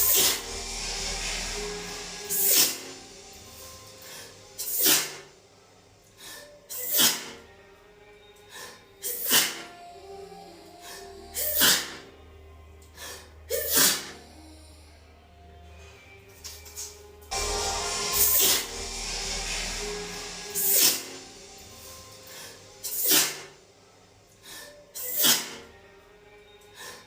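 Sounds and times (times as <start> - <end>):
woman sneezing: 13.5 - 14.2.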